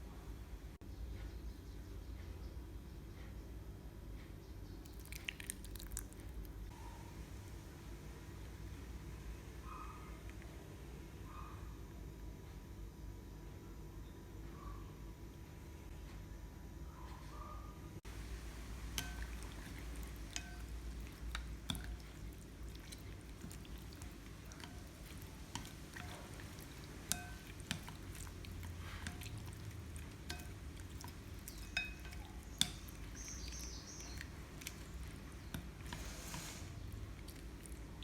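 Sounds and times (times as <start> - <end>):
steady low hum: 6.2 - 38.0
utensils clinking against dishes: 19.0 - 33.6.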